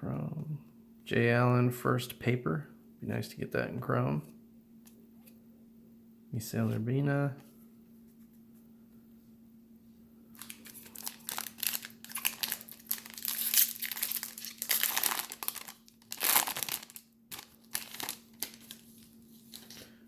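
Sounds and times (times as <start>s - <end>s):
faint steady hum: 0.0s - 20.0s
foil wrapper tearing and crinkling: 10.4s - 19.8s.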